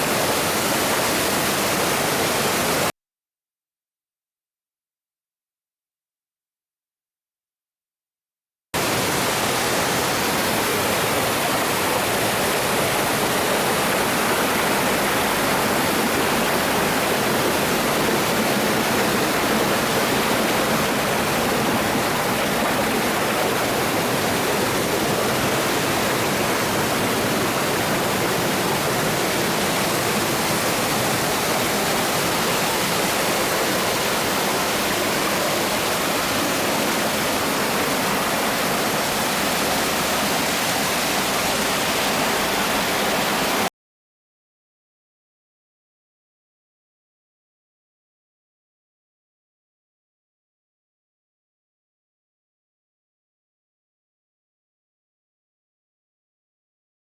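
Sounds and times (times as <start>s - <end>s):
waterfall rushing: 0.0s - 2.9s, 8.8s - 43.7s.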